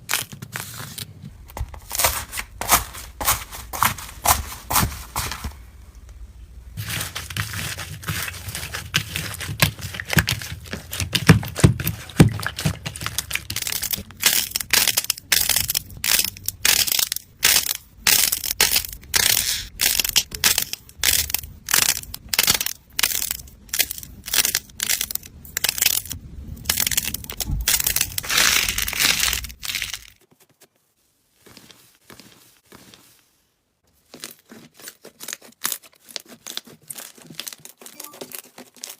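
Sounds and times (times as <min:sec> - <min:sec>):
hands squeezing crackling slime: 0:06.8 - 0:30.2, 0:34.0 - 0:38.9.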